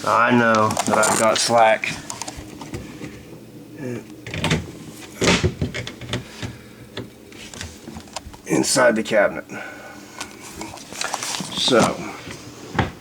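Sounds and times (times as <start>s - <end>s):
knocks and clunks in sink cabinet: 4.3s - 7.1s.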